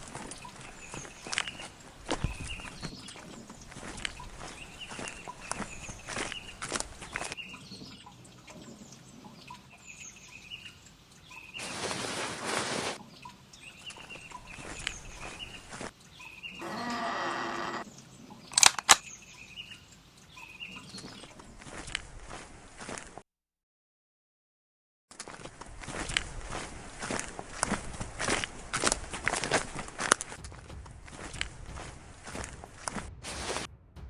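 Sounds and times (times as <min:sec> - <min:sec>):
small birds chirping: 0:00.0 - 0:12.0, 0:13.0 - 0:21.6
drawn-out buzzing: 0:16.6 - 0:17.8
sharp loud cracks: 0:18.6 - 0:19.1.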